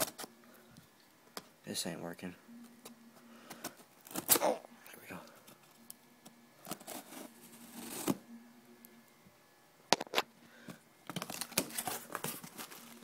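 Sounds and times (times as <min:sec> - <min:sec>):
cardboard box packing rustling: 0:11.1 - 0:13.0.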